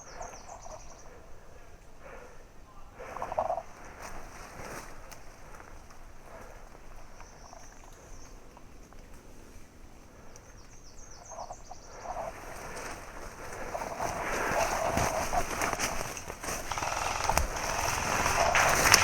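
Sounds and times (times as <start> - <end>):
chorus of calling wildlife: 0.0 - 19.0
rustling: 3.0 - 10.3, 12.0 - 19.0.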